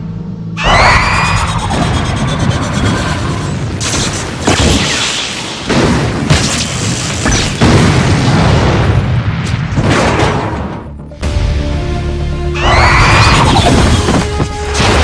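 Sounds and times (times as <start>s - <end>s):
booming explosions: 1.7s - 10.9s
dramatic music score: 10.0s - 15.0s.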